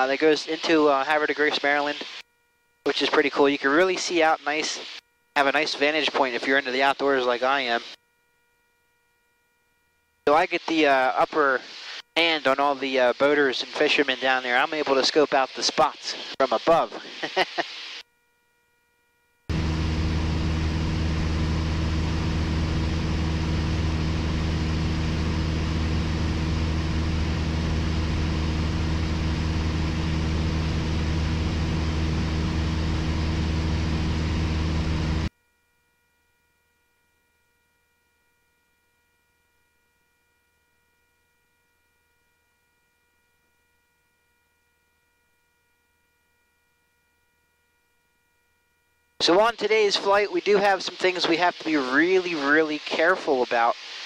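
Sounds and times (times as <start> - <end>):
airplane engine droning in cabin: 19.5 - 35.3.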